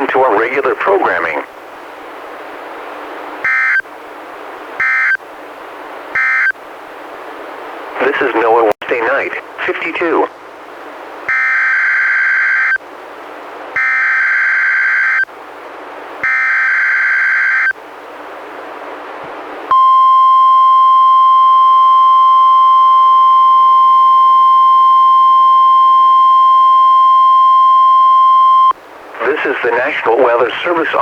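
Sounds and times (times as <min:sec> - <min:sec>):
radio hiss: 0:00.0 - 0:03.8, 0:07.8 - 0:11.3, 0:28.7 - 0:31.0
steady warning alarm tone: 0:03.4 - 0:03.9, 0:04.8 - 0:05.2, 0:06.2 - 0:06.6, 0:11.3 - 0:12.8, 0:13.8 - 0:15.3, 0:16.2 - 0:17.8, 0:19.7 - 0:28.8
screeching digital data bursts: 0:04.8 - 0:05.2, 0:06.2 - 0:06.5.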